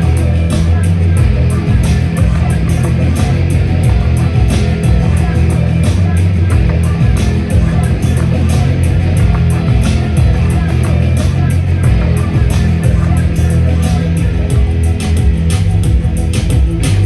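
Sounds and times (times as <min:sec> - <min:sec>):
rock band playing live: 0:00.0 - 0:17.0.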